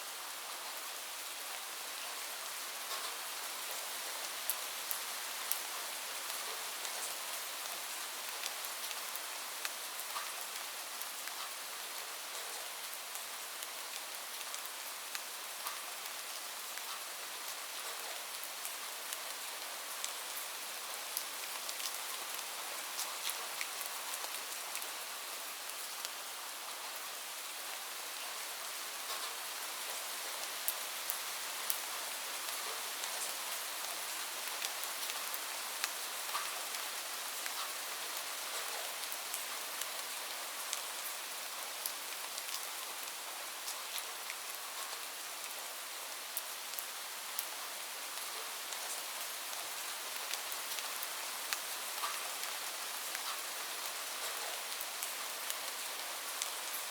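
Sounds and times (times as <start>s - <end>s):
light rain falling: 0.0s - 56.9s.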